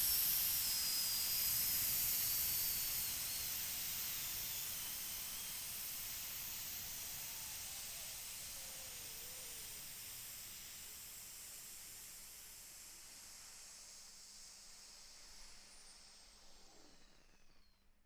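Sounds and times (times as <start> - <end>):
pressure cooker steam hiss: 0.0 - 17.3
faint wavering whistle: 2.4 - 9.9.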